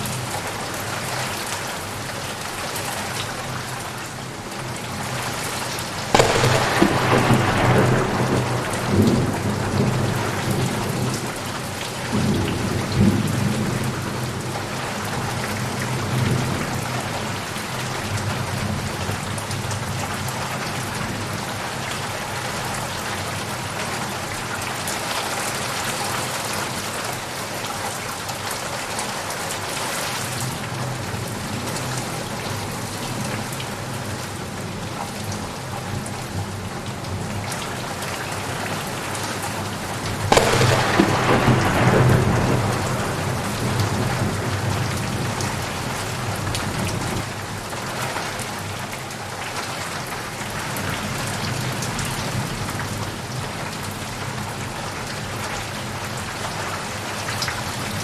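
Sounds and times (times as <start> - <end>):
steady rain falling: 0.0 - 58.0
thunder crack and rumble: 6.2 - 17.2, 40.2 - 47.3.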